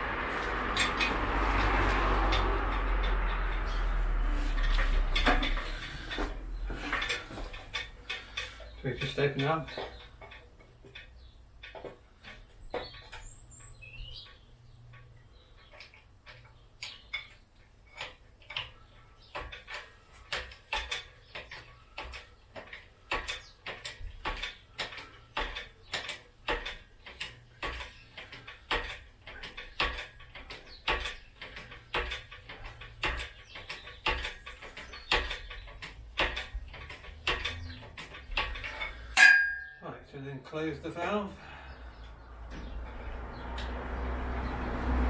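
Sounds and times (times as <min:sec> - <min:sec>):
hand pump handle clicking: 0:15.7 - 0:39.6.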